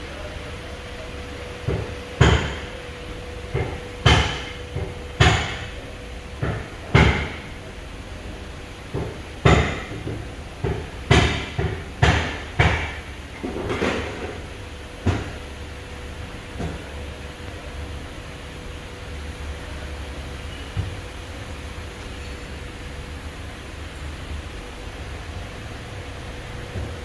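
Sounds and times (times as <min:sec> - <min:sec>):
tools knocking on engine parts: 0:03.4 - 0:05.8, 0:06.4 - 0:07.6, 0:08.9 - 0:15.4.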